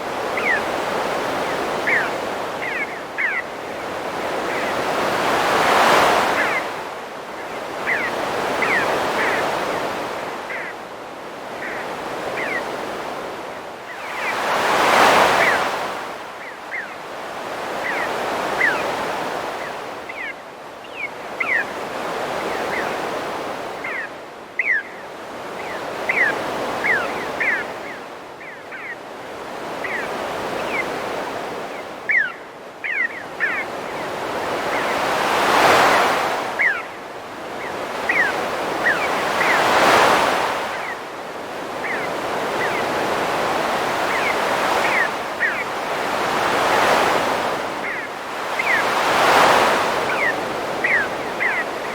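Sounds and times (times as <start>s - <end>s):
ocean waves breaking: 0.0s - 16.4s, 29.2s - 51.9s.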